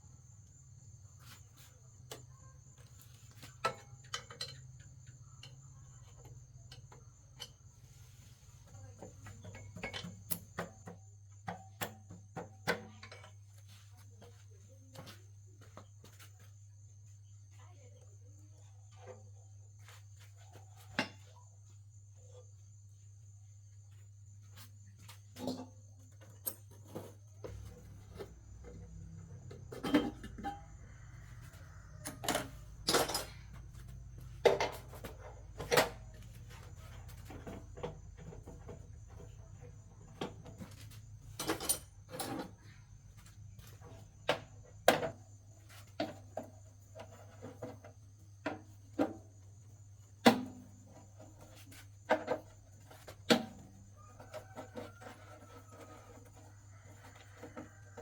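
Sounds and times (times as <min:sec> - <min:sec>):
tools and metal parts clinking: 0:02.9 - 0:07.8, 0:29.5 - 0:30.7, 0:31.5 - 0:39.2, 0:40.6 - 0:42.6.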